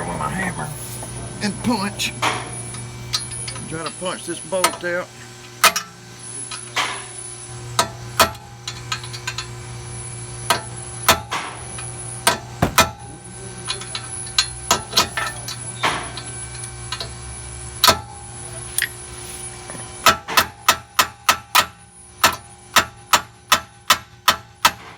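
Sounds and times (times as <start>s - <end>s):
hammer striking steel punch: 10.5s - 11.6s, 12.2s - 13.1s, 20.0s - 24.9s.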